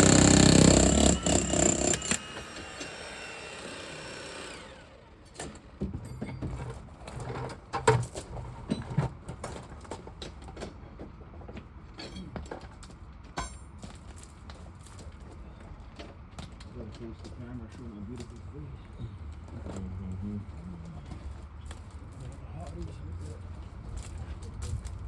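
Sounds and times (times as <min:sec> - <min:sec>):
jackhammer: 0:00.0 - 0:05.0
machine whir winding down: 0:03.0 - 0:05.0.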